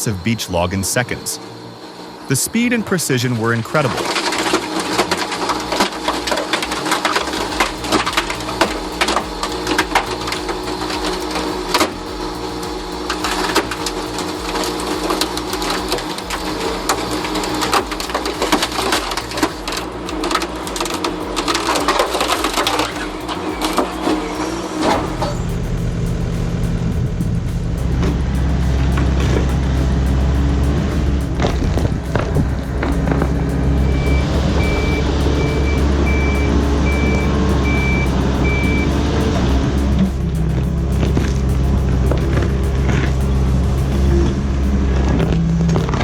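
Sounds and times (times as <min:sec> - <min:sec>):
wood-processing machinery humming: 0:00.1 - 0:46.0
deep engine rumble: 0:03.3 - 0:46.0.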